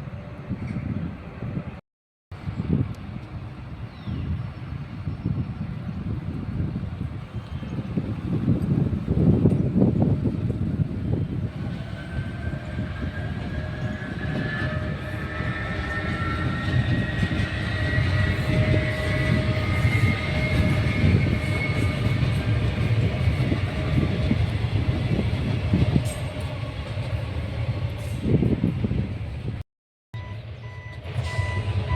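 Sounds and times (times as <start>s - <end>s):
train wheels rumbling: 4.7s - 29.6s
train motor whine: 8.1s - 27.4s, 30.2s - 31.9s.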